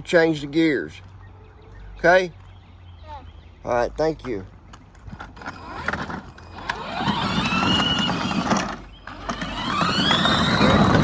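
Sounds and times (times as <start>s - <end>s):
utility vehicle accelerating whine: 5.5s - 11.0s.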